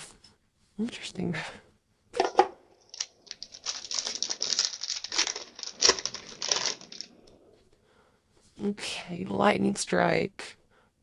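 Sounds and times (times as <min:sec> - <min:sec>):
plastic wrapper crinkling: 0:02.2 - 0:07.4.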